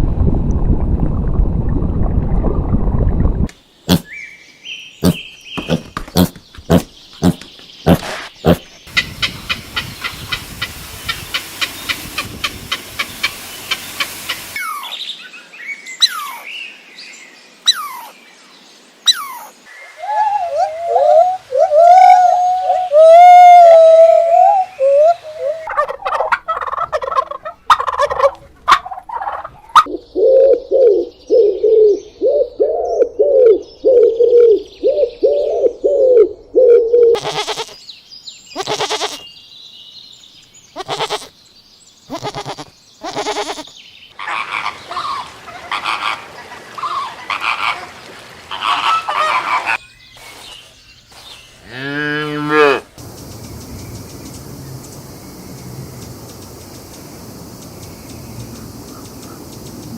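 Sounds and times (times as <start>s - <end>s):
domestic fowl calling: 7.9s - 14.8s, 20.1s - 29.9s, 36.6s - 37.8s, 40.8s - 41.3s, 42.1s - 49.8s
drawn-out pitched call: 37.2s - 37.8s, 38.6s - 39.2s, 40.8s - 41.3s, 42.1s - 49.8s
harsh noisy animal calls: 42.1s - 47.9s.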